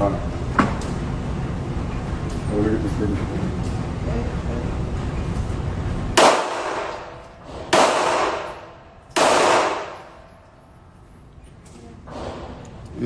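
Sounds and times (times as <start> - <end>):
gunshots: 6.2 - 10.2.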